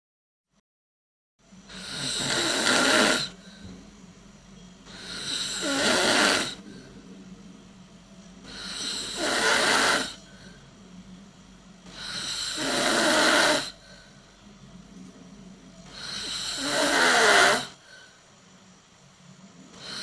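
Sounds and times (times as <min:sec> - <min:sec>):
person snoring: 0:01.7 - 0:03.6, 0:04.9 - 0:07.1, 0:08.5 - 0:10.6, 0:11.9 - 0:14.0, 0:15.9 - 0:18.2, 0:19.7 - 0:20.0.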